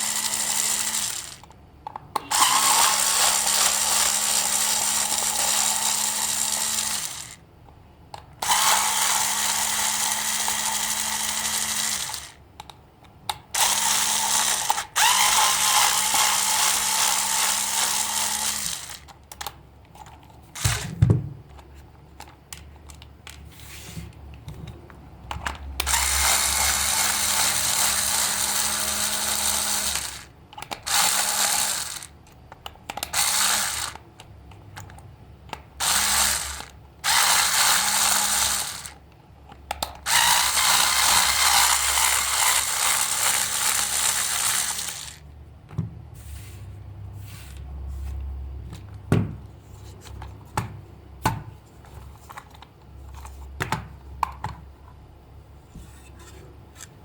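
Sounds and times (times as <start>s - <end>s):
small geared motor whirring: 0.0s - 1.4s, 2.3s - 7.4s, 8.4s - 12.4s, 13.6s - 19.0s, 25.9s - 30.3s, 30.9s - 32.1s, 33.1s - 34.0s, 35.8s - 39.0s, 40.1s - 45.2s.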